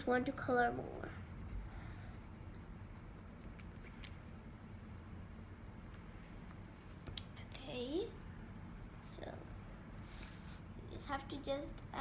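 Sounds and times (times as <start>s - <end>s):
faint low hum: 0.0s - 12.0s
pencil rubbing on paper: 0.2s - 3.6s, 4.3s - 7.0s, 8.5s - 10.6s.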